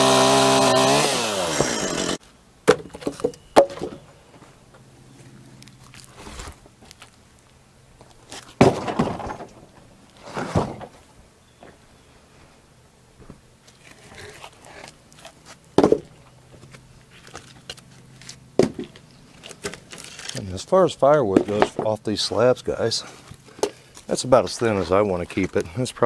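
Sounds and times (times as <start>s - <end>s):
wood slabs thunking: 1.5s - 4.1s, 8.3s - 11.8s, 15.8s - 16.2s, 18.6s - 20.4s, 21.3s - 25.8s.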